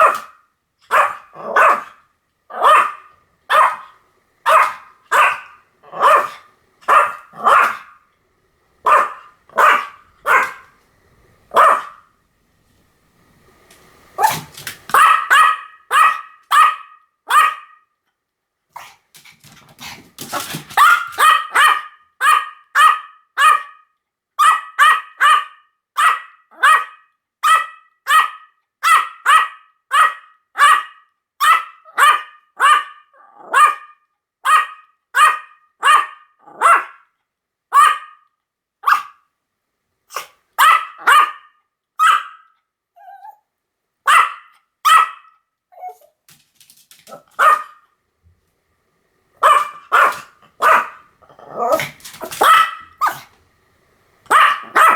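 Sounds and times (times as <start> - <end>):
small dog barking: 0.0 - 8.0, 8.8 - 10.8, 11.5 - 12.1, 14.2 - 17.9, 20.2 - 37.1, 37.7 - 38.2, 38.8 - 39.2, 40.1 - 43.4, 44.0 - 46.1, 47.0 - 47.8, 49.4 - 53.3, 54.3 - 54.9.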